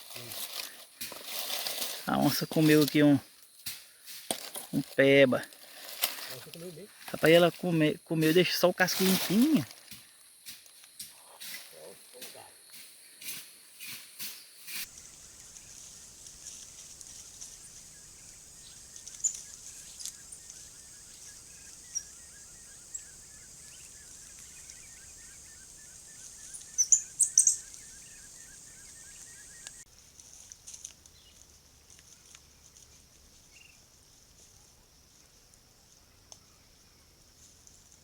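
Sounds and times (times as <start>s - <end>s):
insect hiss: 0.0s - 38.0s
bird chirps: 13.8s - 29.8s.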